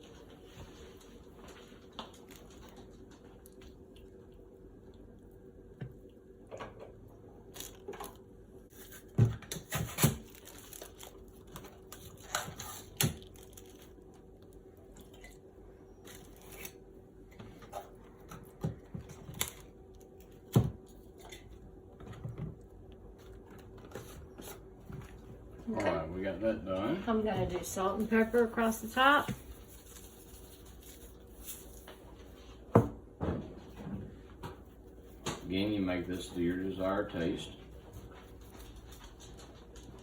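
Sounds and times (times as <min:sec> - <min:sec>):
faint steady hum: 0:00.0 - 0:40.0
plastic crinkling: 0:09.9 - 0:14.3.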